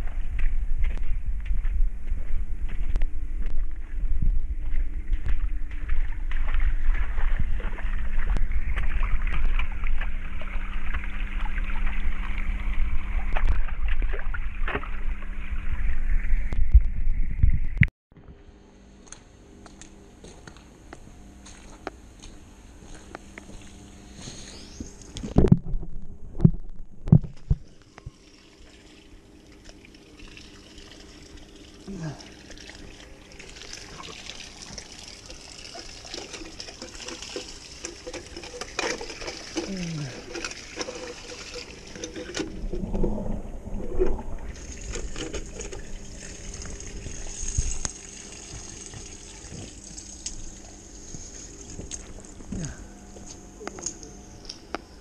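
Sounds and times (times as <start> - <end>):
roof drain glugging: 27.1 - 50.9.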